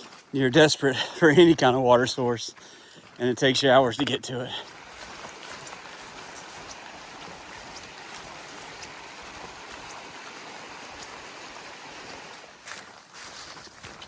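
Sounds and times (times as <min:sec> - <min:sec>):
footsteps on trail: 0:00.0 - 0:14.0
mountain stream rushing: 0:04.5 - 0:13.0.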